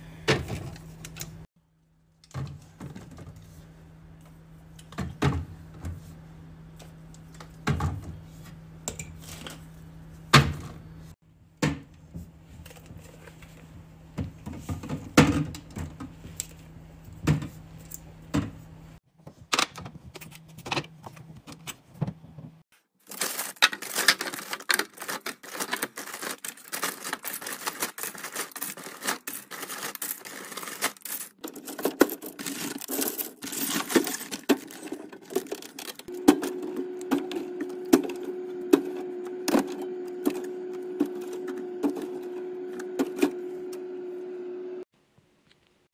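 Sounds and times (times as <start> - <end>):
crackling and rustling clicks: 23.1 - 36.1
items clicking and knocking: 23.1 - 43.4.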